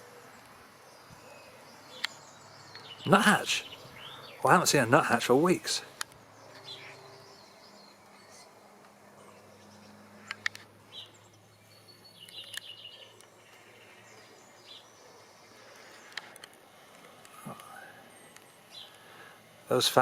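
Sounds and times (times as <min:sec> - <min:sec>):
bird chirps and calls: 0:01.0 - 0:05.2, 0:05.8 - 0:08.6, 0:09.2 - 0:16.2.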